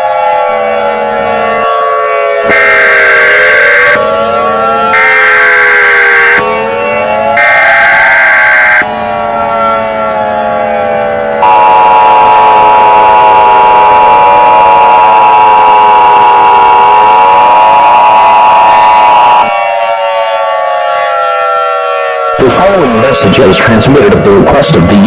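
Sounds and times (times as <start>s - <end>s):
wailing siren: 0.0s - 25.0s
loud steady attention tone: 2.1s - 19.5s
high electronic tone: 2.5s - 4.1s, 4.7s - 8.9s, 11.4s - 19.5s.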